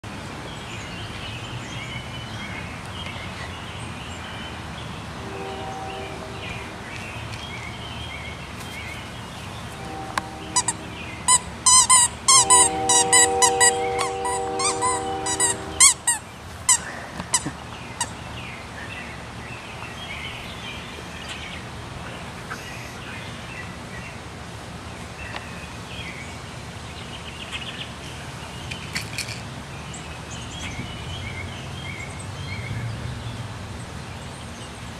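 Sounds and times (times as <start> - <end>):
birds chirping: 0.5 - 24.2
steady droning tone: 9.7 - 11.3, 12.4 - 16.0.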